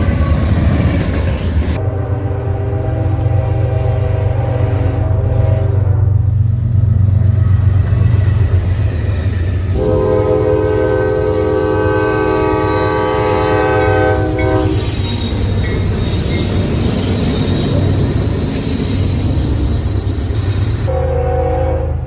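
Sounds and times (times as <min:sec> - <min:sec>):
train rumbling: 0:00.0 - 0:22.0
diesel locomotive horn chord: 0:01.8 - 0:06.6, 0:09.7 - 0:14.8, 0:20.9 - 0:22.0.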